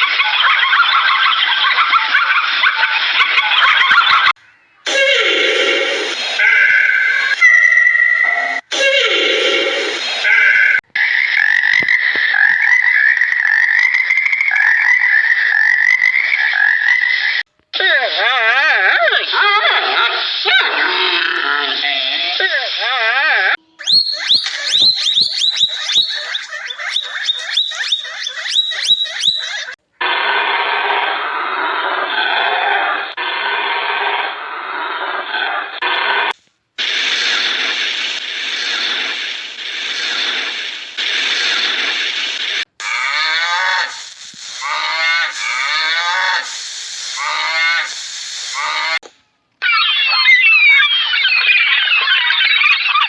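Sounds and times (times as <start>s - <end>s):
animal high-pitched calls: 23.7s - 29.8s, 49.6s - 53.0s
steady hiss: 36.8s - 49.0s.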